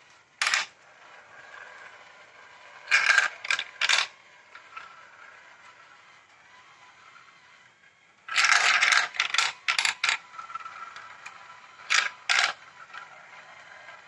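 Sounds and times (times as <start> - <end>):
marbles rattling on plastic track: 0.4 - 0.8, 2.8 - 5.0, 8.3 - 14.0.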